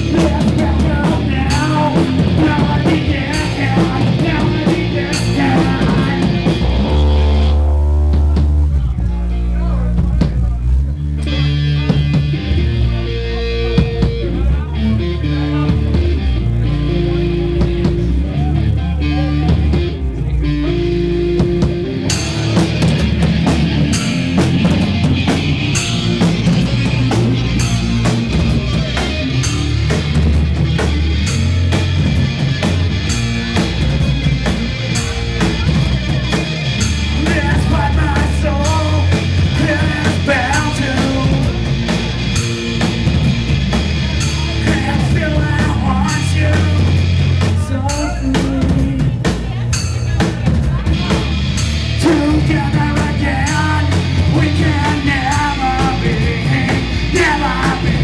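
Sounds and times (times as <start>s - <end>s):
drum kit with crashing cymbals: 0.0s - 8.9s, 21.3s - 58.0s
bass guitar: 0.0s - 58.0s
electric guitar: 0.0s - 58.0s.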